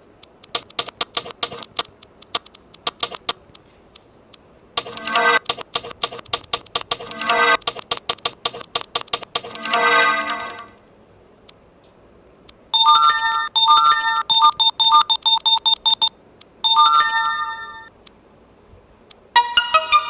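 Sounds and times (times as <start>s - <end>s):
faint ticks: 0.0s - 4.4s
phone notification chime: 16.7s - 17.9s.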